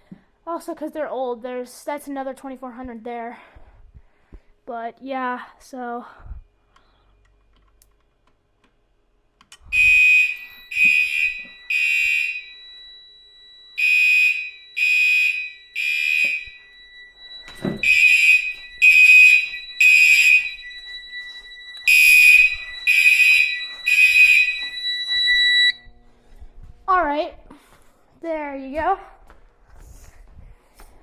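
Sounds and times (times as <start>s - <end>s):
fire alarm short beeps: 9.7s - 25.8s
steady high tone: 9.7s - 27.2s.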